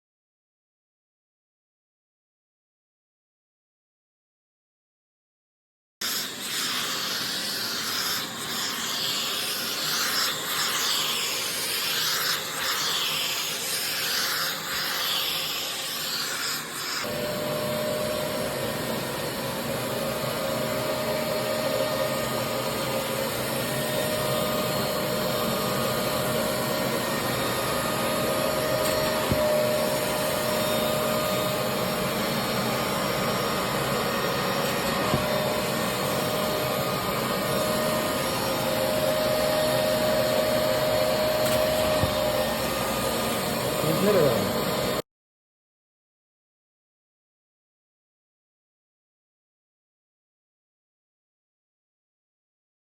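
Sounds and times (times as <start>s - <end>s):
steam cleaner hissing: 6.0s - 45.0s
suction motor whining: 6.0s - 45.0s.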